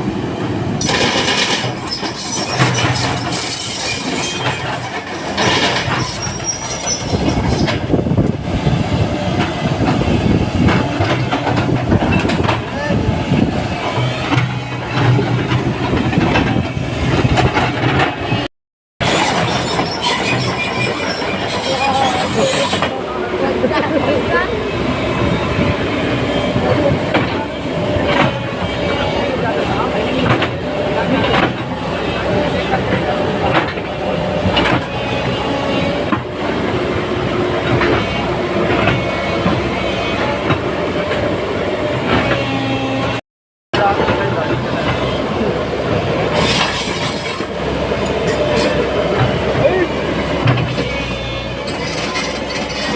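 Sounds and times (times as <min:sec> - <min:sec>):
excavator engine hum: 0:00.0 - 0:43.2, 0:43.8 - 0:52.9
metal clanking and rattling: 0:00.8 - 0:08.0, 0:50.4 - 0:52.9.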